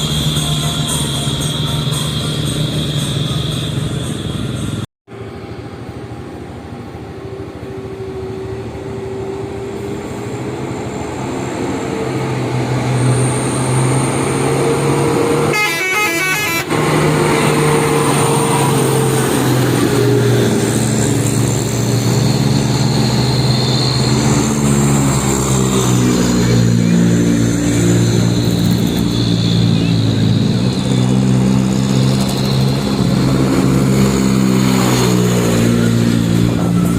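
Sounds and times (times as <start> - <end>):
multi-tone truck horns melody: 0.0 - 4.8, 14.4 - 20.6
truck engines under load: 0.0 - 36.9.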